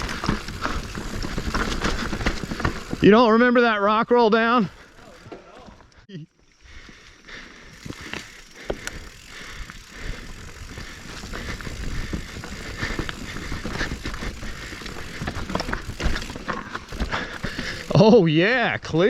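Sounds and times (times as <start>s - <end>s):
bike rattling and knocking: 0.0s - 3.5s, 6.7s - 18.2s
bike tyres rolling on rock: 0.0s - 19.0s.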